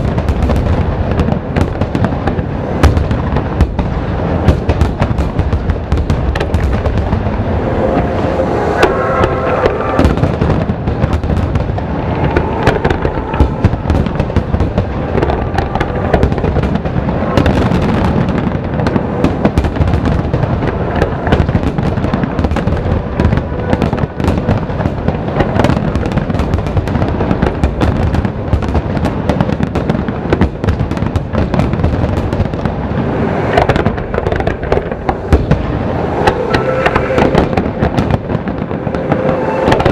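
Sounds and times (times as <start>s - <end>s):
fireworks bangs: 0.0s - 39.9s
music playing: 7.0s - 10.6s, 35.2s - 39.9s.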